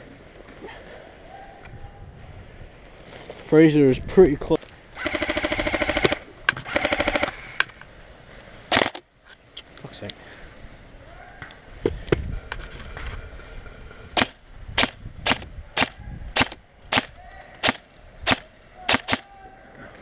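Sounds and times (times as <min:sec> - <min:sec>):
handling rustle: 0:02.7 - 0:03.7
airsoft rifle shots: 0:05.0 - 0:07.4, 0:08.7 - 0:09.0, 0:14.2 - 0:19.3.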